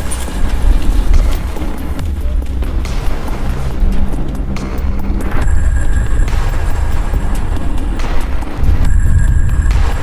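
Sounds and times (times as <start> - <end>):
music with heavy bass beat: 0.0 - 10.0.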